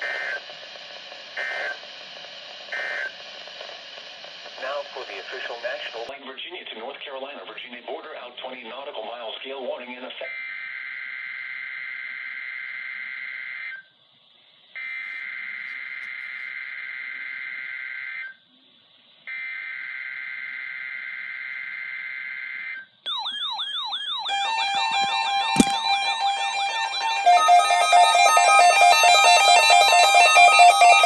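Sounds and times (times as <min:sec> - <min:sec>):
warbling electronic alarm tone: 0:23.1 - 0:31.0
sharp click: 0:25.5 - 0:25.8.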